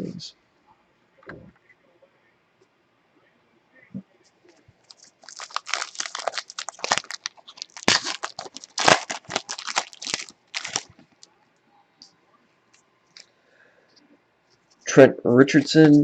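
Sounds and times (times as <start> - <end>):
foil wrapper tearing and crinkling: 4.9 - 11.2.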